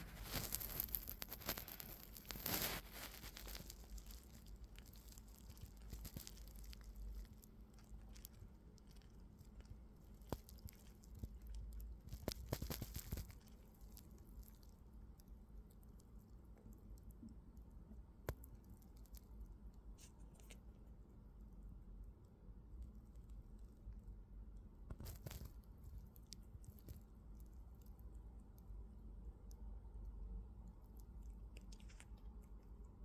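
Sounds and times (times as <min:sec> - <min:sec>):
bird beak nibbling and clicking: 0:00.1 - 0:17.2, 0:30.6 - 0:32.9.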